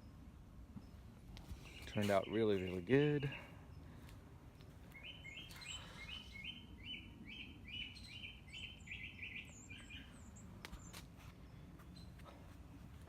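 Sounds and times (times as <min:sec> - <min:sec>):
bird singing rapid chirps: 0:01.6 - 0:03.9, 0:04.9 - 0:12.2.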